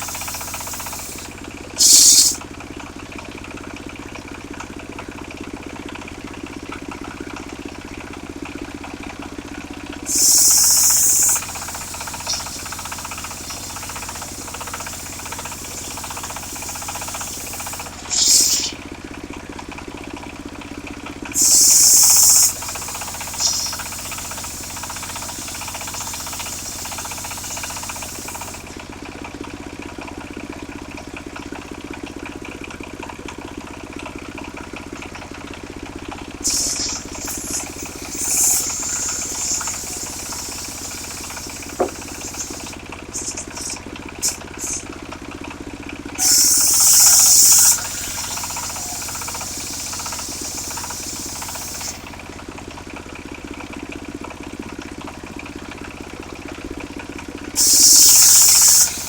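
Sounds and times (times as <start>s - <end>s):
circular saw cutting wood: 0.0s - 2.4s, 10.1s - 18.8s, 21.4s - 28.8s, 36.4s - 44.9s, 46.2s - 52.1s, 57.6s - 59.0s.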